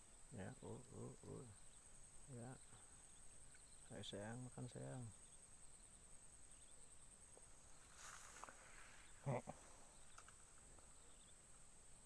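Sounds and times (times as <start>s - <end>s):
soft hiss: 0.0s - 12.0s.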